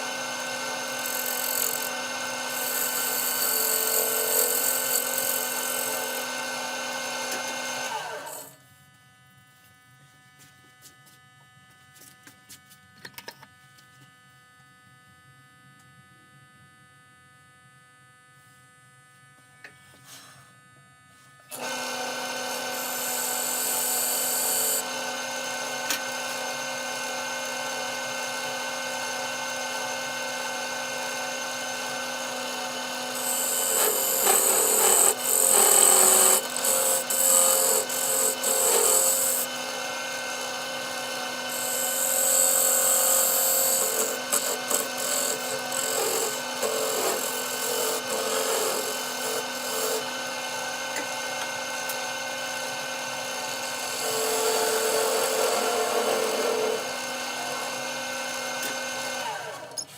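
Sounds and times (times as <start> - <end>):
tool cutting spinning wood: 0.0 - 8.6, 21.5 - 59.9
wood lathe running: 0.0 - 8.6, 21.5 - 59.7.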